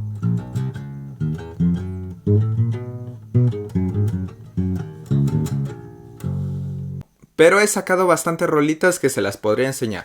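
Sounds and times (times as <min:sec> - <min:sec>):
plucked bass guitar line: 0:00.0 - 0:07.0.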